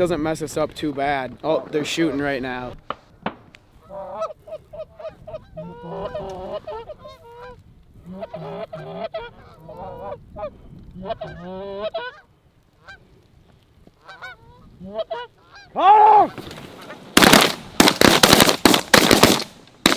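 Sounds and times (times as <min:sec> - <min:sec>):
geese honking: 0:03.8 - 0:13.0, 0:14.0 - 0:15.8.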